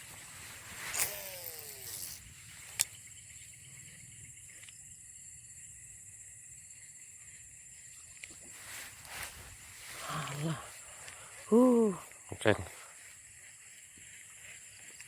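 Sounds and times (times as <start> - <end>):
high-pitched insect drone: 0.0 - 8.2.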